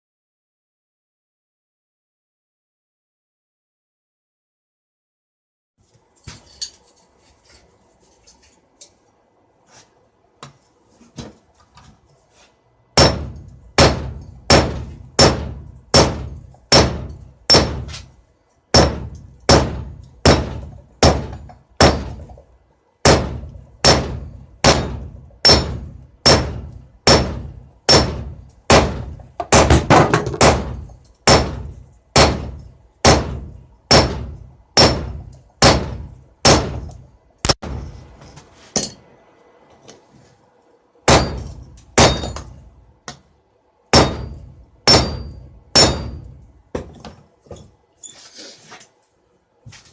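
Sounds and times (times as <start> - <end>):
hammer ringing on anvil: 24.8 - 26.4, 41.1 - 42.5, 44.0 - 46.4.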